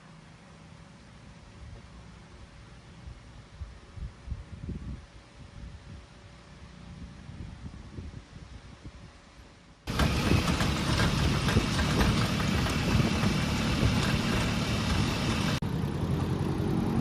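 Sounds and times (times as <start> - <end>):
road noise: 9.9 - 17.0
vehicle engine rumbling: 9.9 - 17.0.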